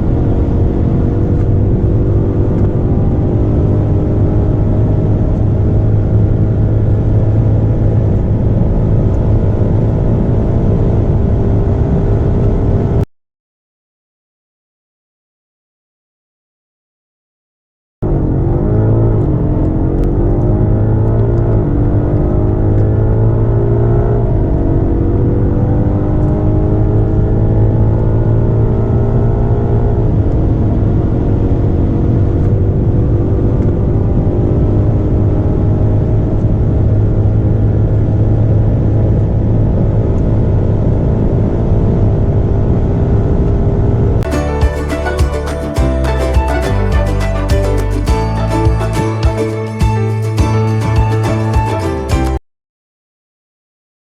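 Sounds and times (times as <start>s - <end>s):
car engine accelerating hard: 0.0s - 13.0s, 18.0s - 45.0s.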